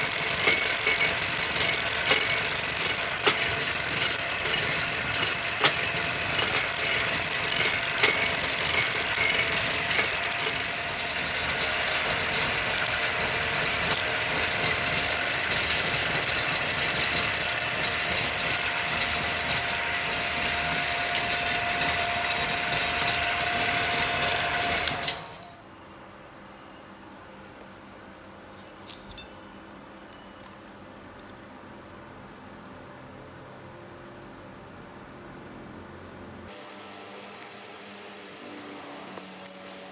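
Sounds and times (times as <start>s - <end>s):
copying machine whining and clicking: 0.0s - 25.6s.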